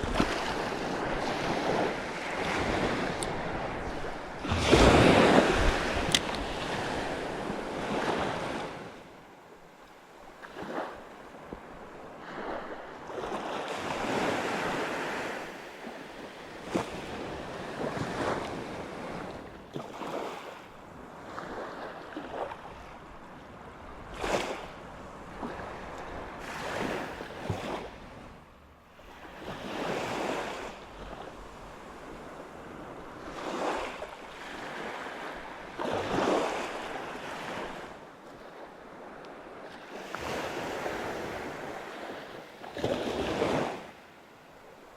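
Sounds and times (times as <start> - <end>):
wind buffeting microphone: 0.0 - 8.9
sea waves on shore: 0.0 - 44.9.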